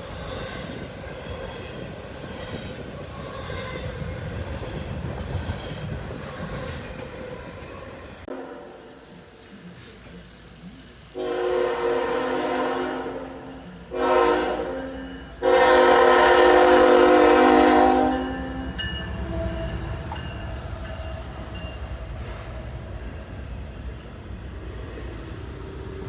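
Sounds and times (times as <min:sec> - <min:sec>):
train passing rumble: 0:00.0 - 0:26.0
locomotive air horn blasts: 0:08.3 - 0:09.0, 0:11.2 - 0:20.0.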